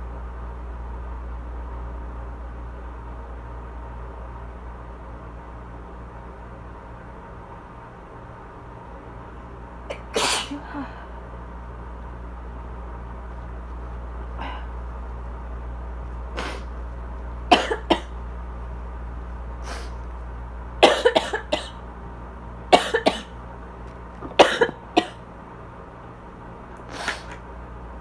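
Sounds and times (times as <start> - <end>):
air conditioner hum: 0.0 - 28.0
person coughing: 9.9 - 11.1, 17.5 - 18.1, 20.8 - 21.8, 22.8 - 23.3, 24.2 - 25.2.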